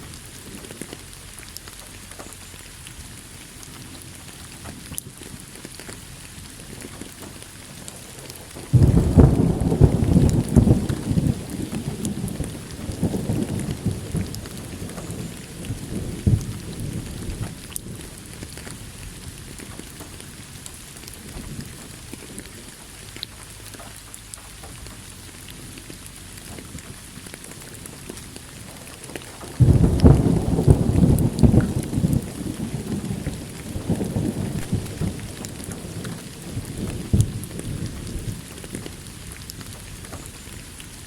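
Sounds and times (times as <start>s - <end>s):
steady rain falling: 0.0s - 41.0s
thunder rumbling: 6.7s - 22.8s, 26.4s - 40.9s
sudden thunderclap: 8.6s - 17.7s, 29.3s - 38.9s.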